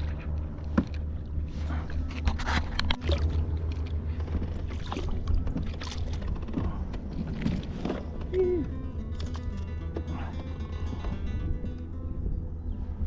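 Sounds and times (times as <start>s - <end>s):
water splashing around kayak: 0.0s - 8.4s
steady low rumble: 0.0s - 13.0s.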